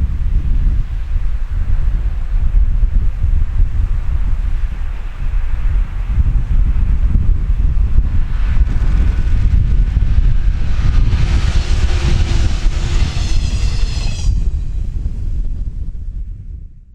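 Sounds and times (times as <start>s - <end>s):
wind buffeting microphone: 0.0s - 16.9s
hiss and high whine: 7.1s - 16.3s
electric train passing: 7.7s - 16.3s.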